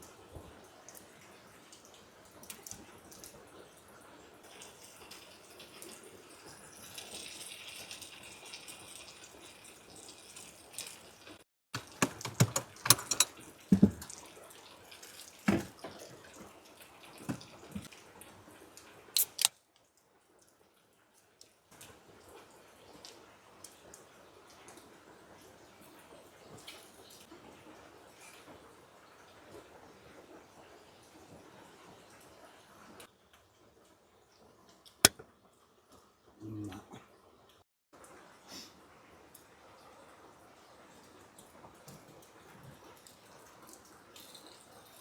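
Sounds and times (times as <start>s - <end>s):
faint running water: 0.0s - 45.0s
objects knocking and clicking: 11.8s - 14.2s, 15.5s - 16.0s, 17.2s - 17.9s.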